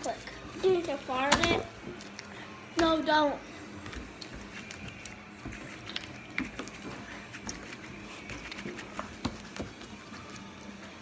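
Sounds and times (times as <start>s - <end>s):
slime squishing: 3.8s - 11.0s.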